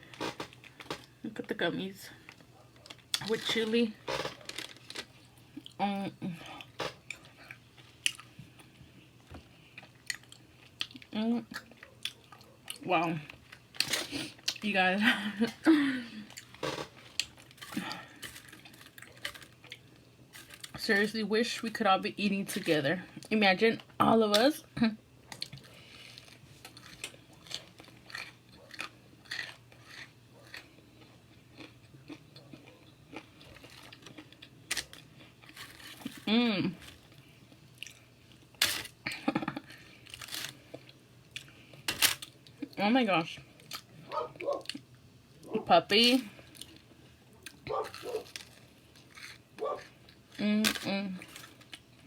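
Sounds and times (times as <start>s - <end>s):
person chewing food: 4.1s - 5.8s, 6.4s - 14.6s, 16.2s - 20.8s, 25.3s - 42.6s, 43.6s - 45.5s, 46.2s - 50.4s.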